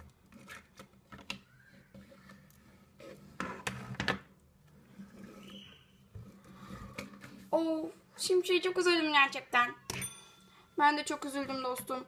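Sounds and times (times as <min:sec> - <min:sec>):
rustling scrape: 0:04.7 - 0:05.6.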